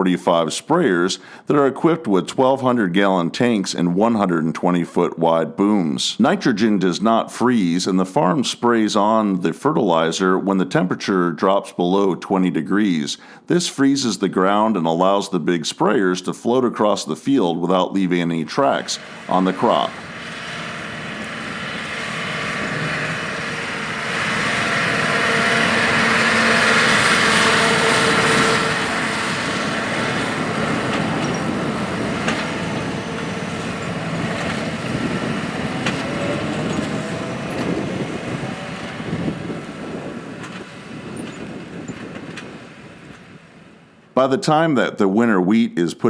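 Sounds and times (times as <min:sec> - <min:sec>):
sprayer vehicle driving: 0:16.2 - 0:44.6.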